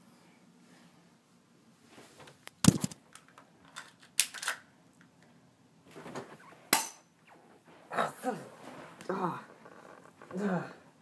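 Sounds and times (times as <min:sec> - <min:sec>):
faint rustling: 0:07.4 - 0:10.9.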